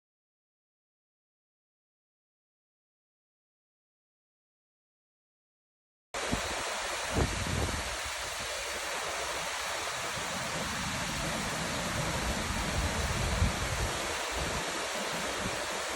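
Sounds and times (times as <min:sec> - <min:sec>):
waterfall rushing: 0:06.2 - 0:15.9.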